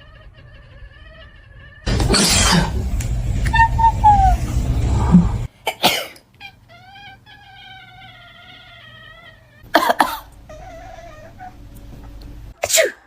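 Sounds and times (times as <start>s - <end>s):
person coughing: 5.6s - 6.2s, 9.7s - 10.3s, 12.6s - 13.0s.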